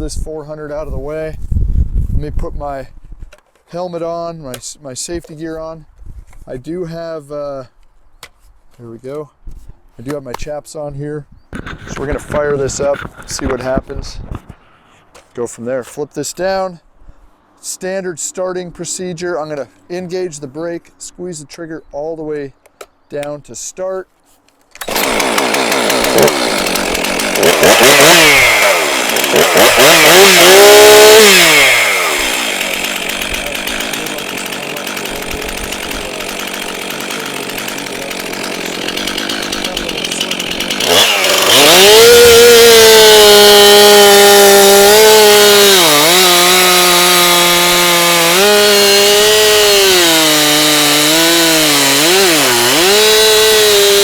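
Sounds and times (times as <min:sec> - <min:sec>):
chainsaw revving and cutting wood: 0:11.6 - 0:13.9, 0:24.8 - 0:54.0.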